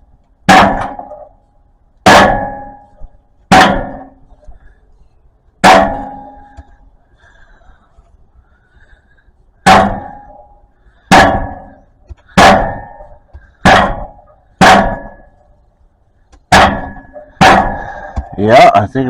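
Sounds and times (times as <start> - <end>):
metallic clang on exhaust: 0.4 - 4.7, 5.6 - 6.8, 9.6 - 15.6, 16.4 - 18.4.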